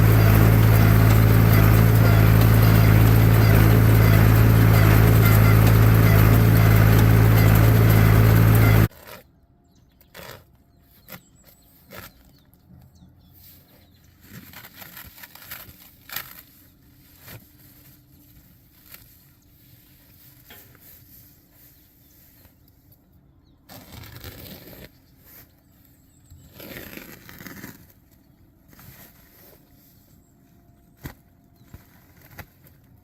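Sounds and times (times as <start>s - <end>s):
tractor engine running: 0.0s - 8.9s.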